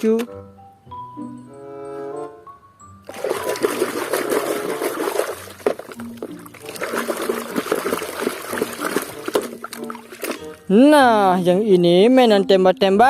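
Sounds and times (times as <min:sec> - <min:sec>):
water running and splashing: 0:03.1 - 0:10.6.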